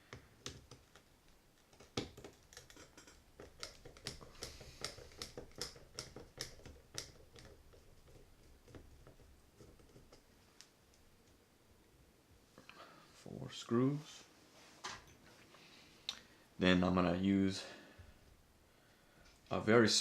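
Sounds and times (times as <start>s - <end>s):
screwdriver metal clicks and taps: 1.8s - 7.6s.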